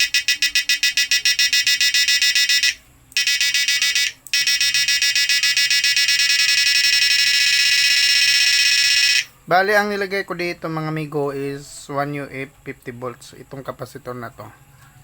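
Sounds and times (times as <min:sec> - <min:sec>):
electronic module buzzing: 0:00.0 - 0:09.3.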